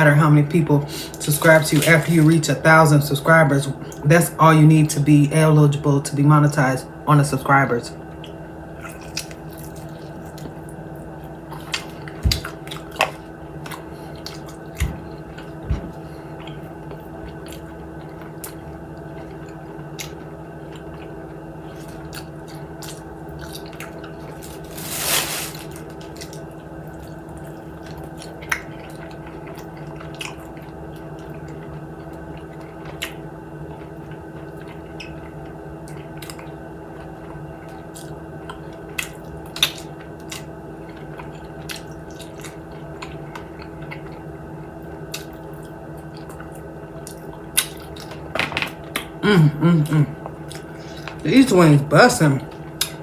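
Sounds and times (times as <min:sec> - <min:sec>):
steady low hum: 0:00.0 - 0:53.0
chewing mouth sounds: 0:26.0 - 0:44.3, 0:48.9 - 0:51.2.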